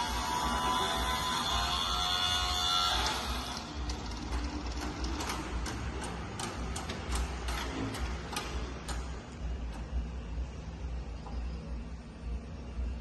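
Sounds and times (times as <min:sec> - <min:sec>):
machine low rumble: 0:00.0 - 0:13.0
sharp irregular machine ticks: 0:03.4 - 0:10.0.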